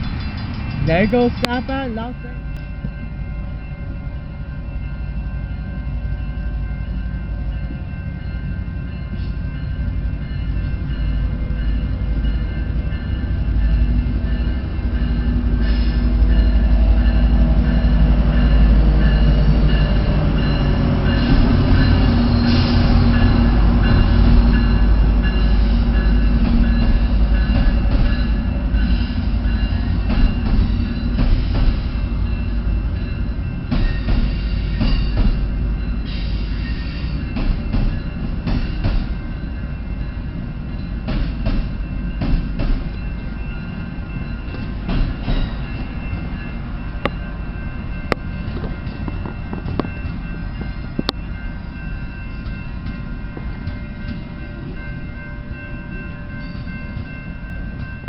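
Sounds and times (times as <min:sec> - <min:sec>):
train wheels clicking over rail joints: 0:00.0 - 0:01.9, 0:12.7 - 0:39.5, 0:40.9 - 0:47.2, 0:47.8 - 0:51.2
train engine drone: 0:00.0 - 0:58.0.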